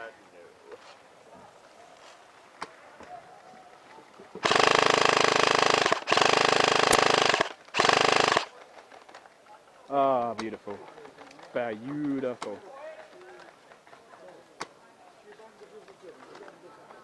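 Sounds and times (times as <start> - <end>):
airsoft rifle firing full auto: 4.4 - 8.5.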